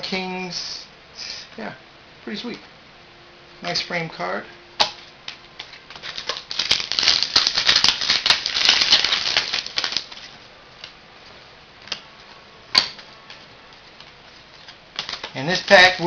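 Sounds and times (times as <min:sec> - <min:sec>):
cards snapping: 0:04.8 - 0:11.0, 0:14.0 - 0:16.0
foil wrapper tearing and crinkling: 0:05.6 - 0:10.4, 0:14.6 - 0:16.0.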